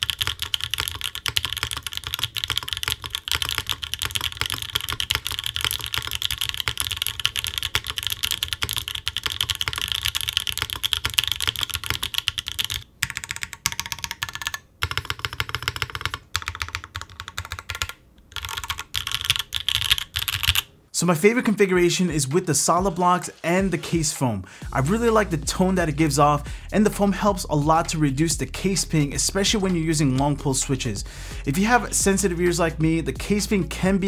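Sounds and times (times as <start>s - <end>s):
fast typing on mechanical keyboard: 0.0s - 20.7s.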